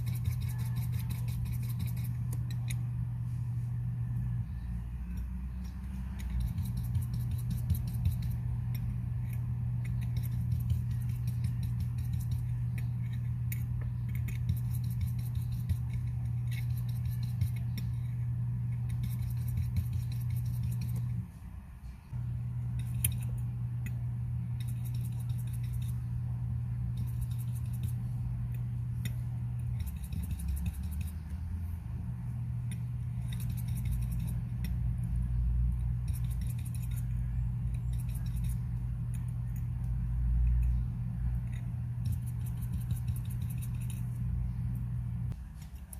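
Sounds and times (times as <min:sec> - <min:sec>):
steady low hum: 0:00.0 - 0:45.9
small metal tools clicking: 0:05.0 - 0:18.2.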